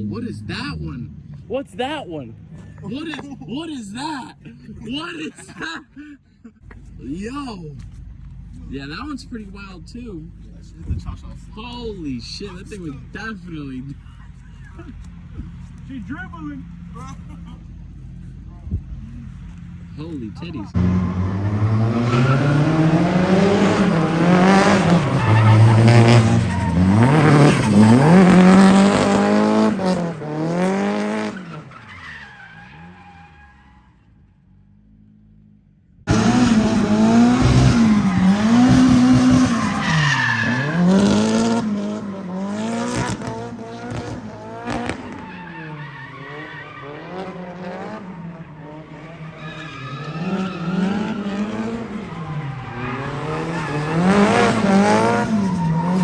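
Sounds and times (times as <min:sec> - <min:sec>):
car engines revving: 0:00.0 - 0:05.8, 0:06.6 - 0:56.0
tire squeal: 0:20.7 - 0:34.6, 0:36.1 - 0:56.0.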